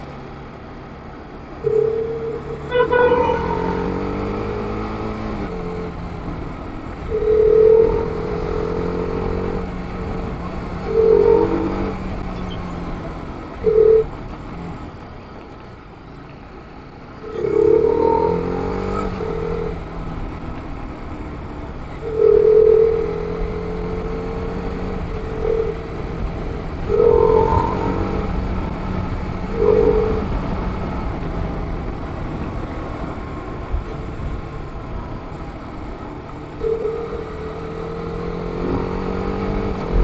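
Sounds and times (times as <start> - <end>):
horn honks: 1.6 - 4.2.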